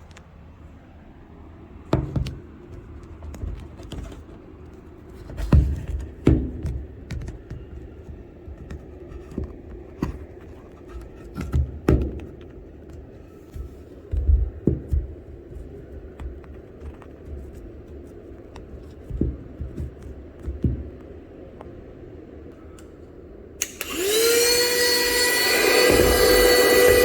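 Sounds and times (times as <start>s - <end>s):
hard objects knocking and scratching: 1.9s - 21.1s.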